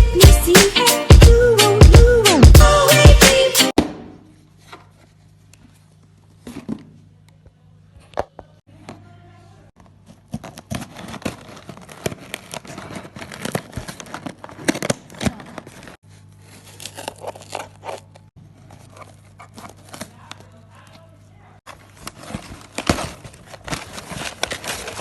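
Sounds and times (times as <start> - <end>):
plastic crinkling: 9.9 - 21.0, 21.7 - 25.0.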